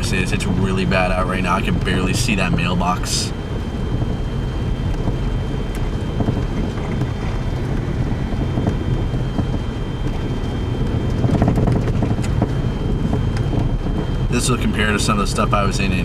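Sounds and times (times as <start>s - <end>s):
car driving rumble inside cabin: 0.0s - 16.0s.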